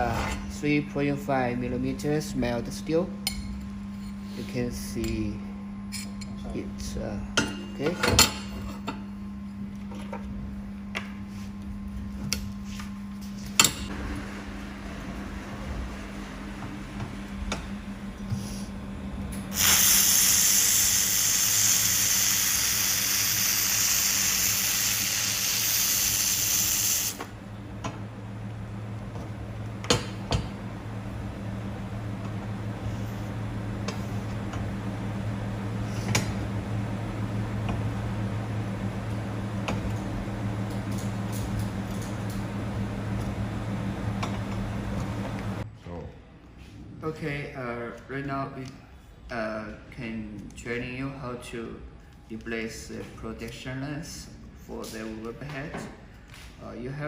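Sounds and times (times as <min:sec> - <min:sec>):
low steady hum: 0:00.0 - 0:57.0
laser welder hissing: 0:19.5 - 0:27.3.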